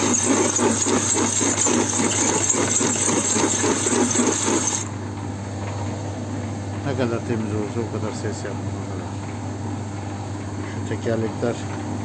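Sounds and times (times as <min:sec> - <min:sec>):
metal scrubber scraping wheel: 0:00.0 - 0:04.9
dryer machine hum: 0:00.0 - 0:12.0.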